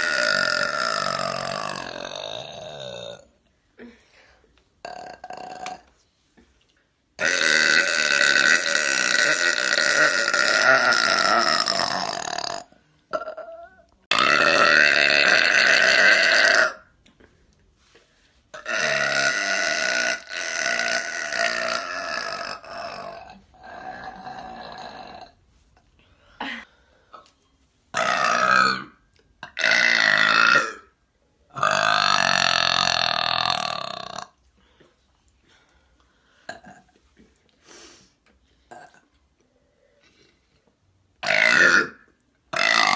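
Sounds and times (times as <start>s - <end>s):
woman burping: 0.0s - 4.0s, 4.8s - 5.9s, 7.2s - 16.8s, 18.6s - 25.4s, 26.4s - 26.7s, 36.5s - 37.0s.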